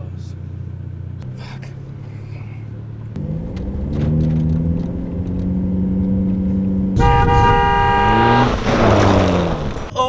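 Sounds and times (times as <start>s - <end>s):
car engine revving: 1.2s - 10.0s
car horn blast: 7.0s - 10.0s.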